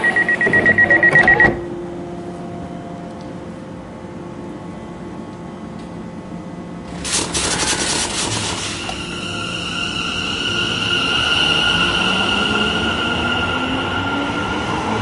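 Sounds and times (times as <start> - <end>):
train low rumble: 0.0 - 15.0
rushing hiss: 6.9 - 10.5.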